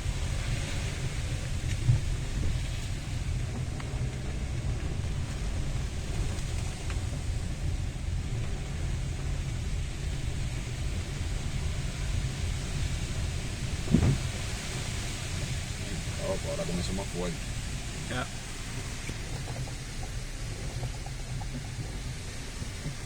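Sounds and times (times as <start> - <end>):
strong wind buffeting microphone: 0.0 - 23.0.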